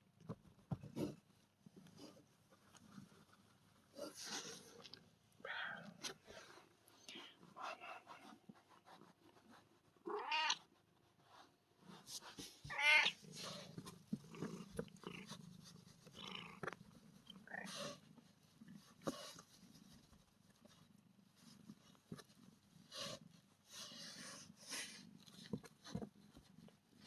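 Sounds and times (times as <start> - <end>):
kitten meowing: 10.2 - 10.6, 12.7 - 13.2.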